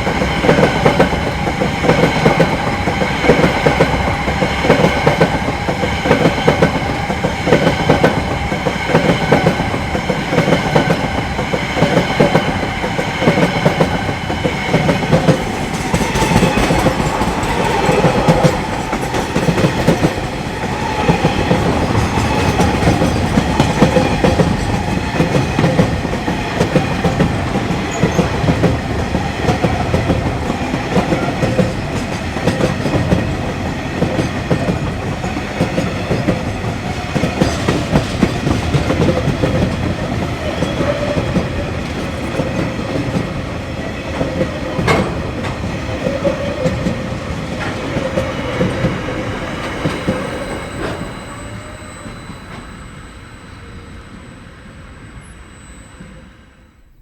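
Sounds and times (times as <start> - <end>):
train wheels clattering over rail joints: 0.0 - 43.4, 44.0 - 51.1
high ringing tone: 49.6 - 57.0.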